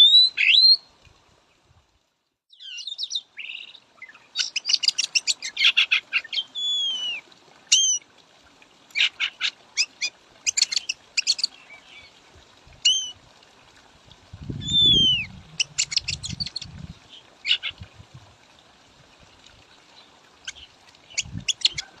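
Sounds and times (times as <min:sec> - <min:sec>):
bird chattering and whistling: 0:04.4 - 0:08.0, 0:14.6 - 0:16.7, 0:20.5 - 0:21.9.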